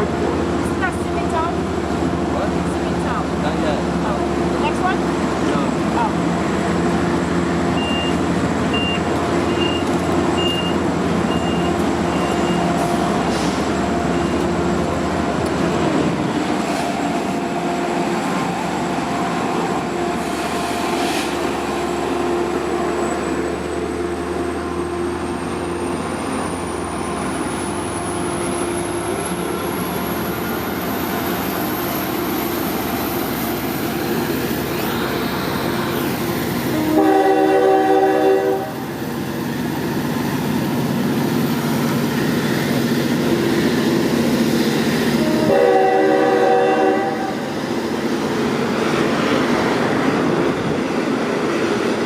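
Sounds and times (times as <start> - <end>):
diesel locomotive engine running: 0.0 - 52.0
short high beeps: 7.8 - 8.2.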